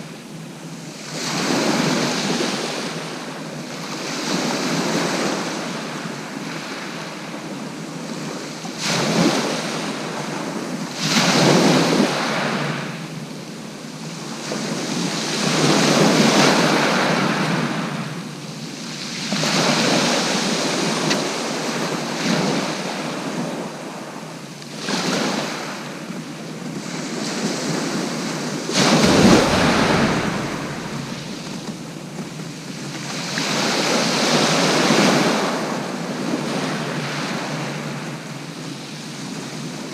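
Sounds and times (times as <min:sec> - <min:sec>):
sea waves breaking on shore: 0:00.0 - 0:39.9
wind buffeting microphone: 0:28.4 - 0:33.2.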